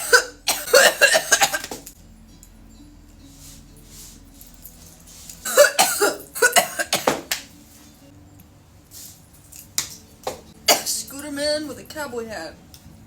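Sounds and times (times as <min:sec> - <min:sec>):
woman coughing: 0:00.0 - 0:01.8, 0:05.5 - 0:07.2, 0:10.7 - 0:11.0.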